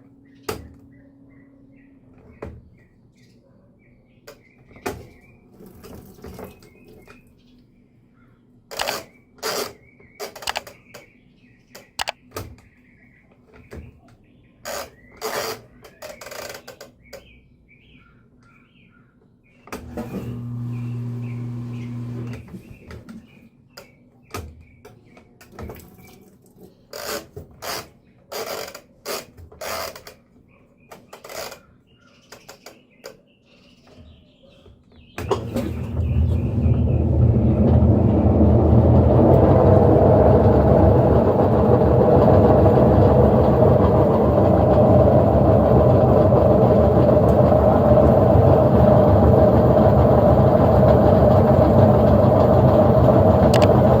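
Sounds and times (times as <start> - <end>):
washing machine motor hum: 19.8 - 22.5, 35.2 - 54.0
washing machine spin noise: 19.8 - 22.7, 35.2 - 54.0.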